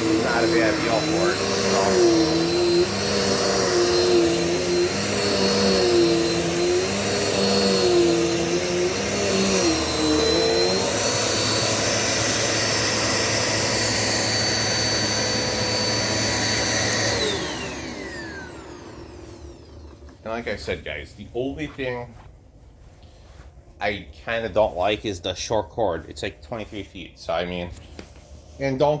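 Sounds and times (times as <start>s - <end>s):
vacuum cleaner motor whine: 0.0s - 20.8s.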